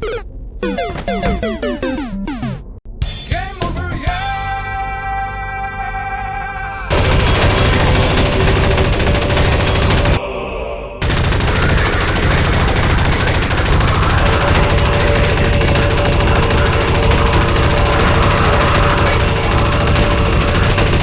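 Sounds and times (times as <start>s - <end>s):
rapid gunfire: 6.9s - 10.2s, 11.0s - 21.0s.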